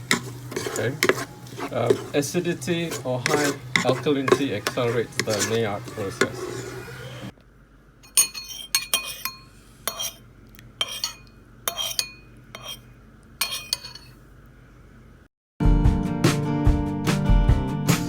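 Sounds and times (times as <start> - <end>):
utensil clinking against pot: 0.0 - 7.0, 8.0 - 10.2, 10.8 - 14.2.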